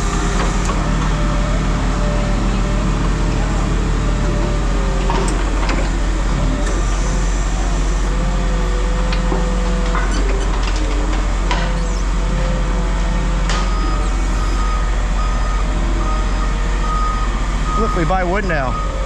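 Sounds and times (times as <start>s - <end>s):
heavy machinery engine running: 0.0s - 19.0s
reversing alarm beeping: 3.8s - 10.4s, 12.3s - 19.0s
metal knocks and clanks: 4.3s - 12.1s.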